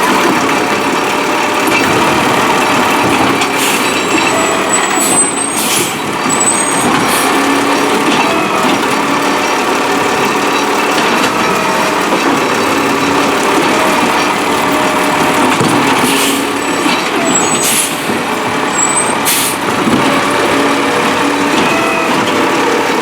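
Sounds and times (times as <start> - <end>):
garbage truck running: 0.0 - 23.0
short air hisses: 19.3 - 19.6.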